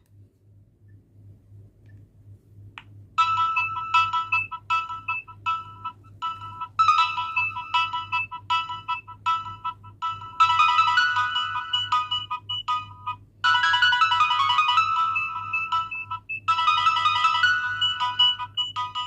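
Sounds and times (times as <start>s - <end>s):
polyphonic ringtone melody: 3.2s - 19.0s.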